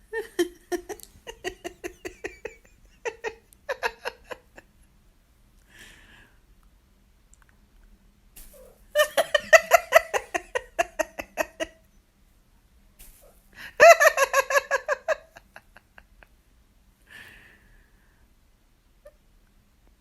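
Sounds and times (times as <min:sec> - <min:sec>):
woman laughing: 0:00.0 - 0:04.7, 0:09.0 - 0:11.8, 0:13.6 - 0:16.2.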